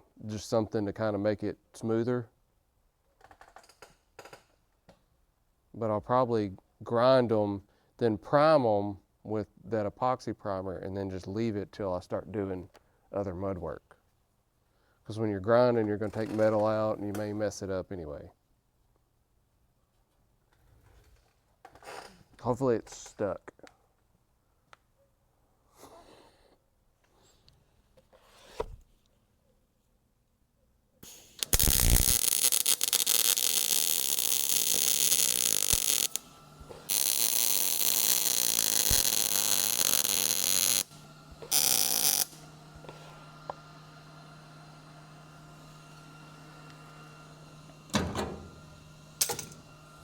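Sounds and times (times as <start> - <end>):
angle grinder grinding steel: 31.0 - 50.0.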